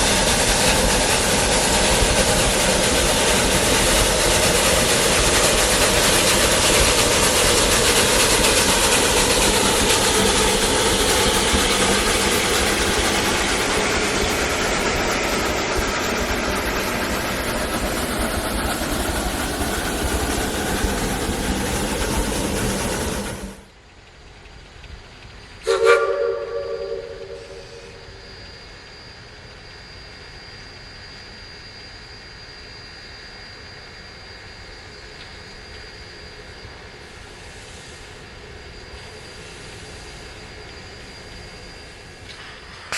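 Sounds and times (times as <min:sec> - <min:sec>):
steam train running on rails: 0:00.0 - 0:42.9
steam whistle chord: 0:25.6 - 0:28.2.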